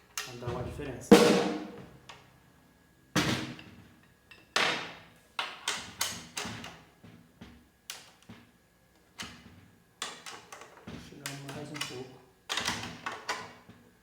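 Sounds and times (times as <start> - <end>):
snare drum hits: 1.1 - 1.9.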